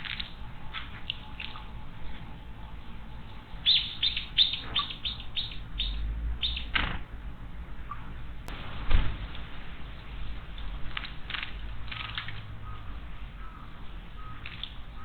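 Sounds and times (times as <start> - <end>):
small bird chirping: 3.5 - 6.9.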